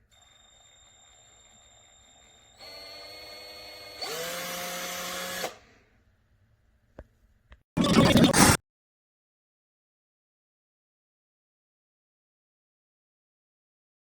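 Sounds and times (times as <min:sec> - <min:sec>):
cordless drill motor whirring: 0:00.2 - 0:05.7.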